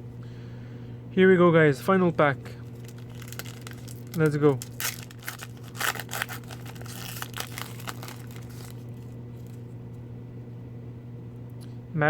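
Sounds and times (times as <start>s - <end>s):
plastic wrapper tearing and crinkling: 2.6s - 9.6s.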